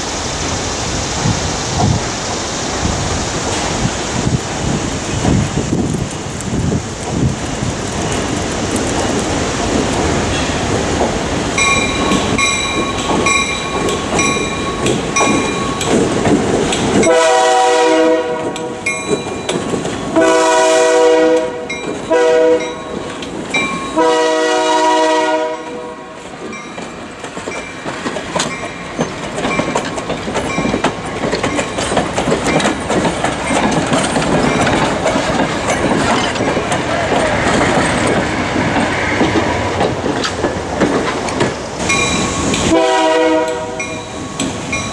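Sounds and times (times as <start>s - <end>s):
train rumbling and clattering: 0.0s - 44.9s
locomotive horn blasts: 17.0s - 18.8s, 20.1s - 22.8s, 23.9s - 26.2s, 42.7s - 44.0s.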